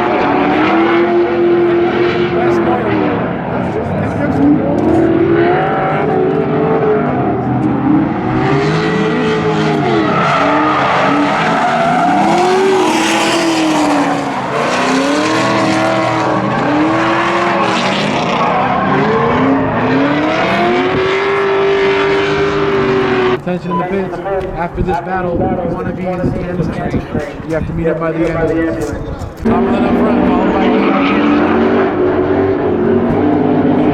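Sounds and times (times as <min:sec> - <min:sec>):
car engines revving: 0:00.0 - 0:33.9
tyre squeal and skidding: 0:09.4 - 0:15.8.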